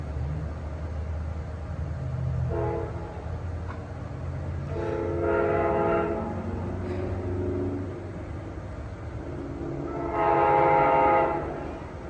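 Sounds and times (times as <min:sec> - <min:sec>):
diesel locomotive rumbling: 0:00.0 - 0:12.0
train horn: 0:02.4 - 0:03.3, 0:04.6 - 0:08.0, 0:09.6 - 0:11.9.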